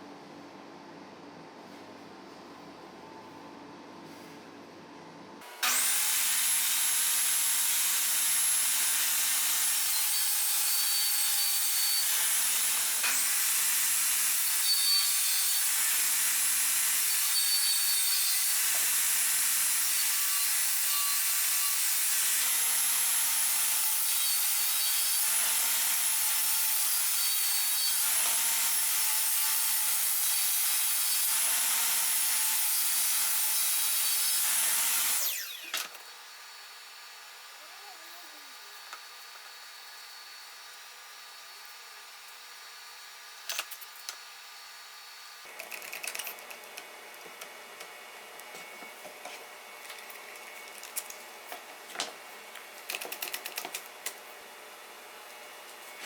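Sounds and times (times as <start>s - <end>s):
power tool motor whining: 34.4s - 36.9s.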